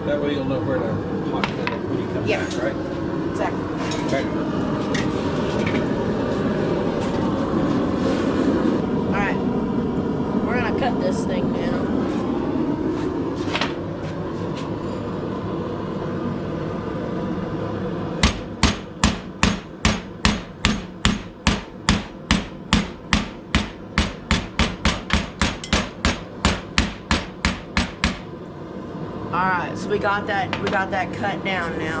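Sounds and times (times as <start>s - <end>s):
hammer striking steel on anvil: 18.2s - 28.3s.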